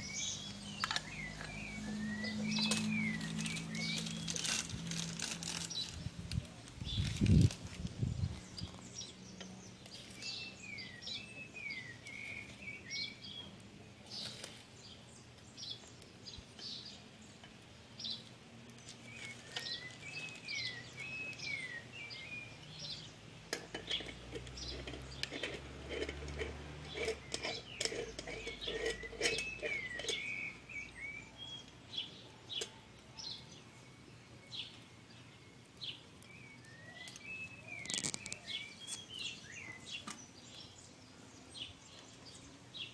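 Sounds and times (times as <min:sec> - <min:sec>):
songbird warbling: 0:00.0 - 0:04.4, 0:36.3 - 0:40.9.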